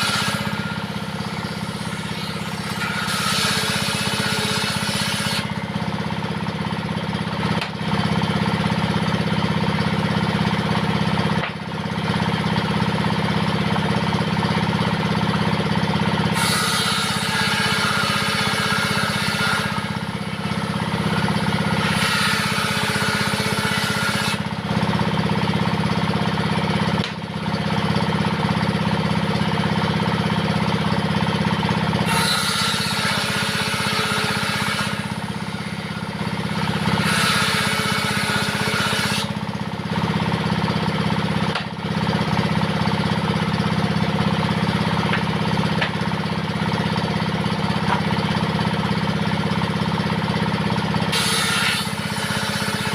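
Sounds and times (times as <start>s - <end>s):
diesel engine running: 0.0s - 2.8s, 5.4s - 32.2s, 32.8s - 52.9s
saw blade ripping through wood: 0.0s - 5.6s, 16.3s - 24.5s, 32.0s - 39.4s, 51.1s - 52.9s.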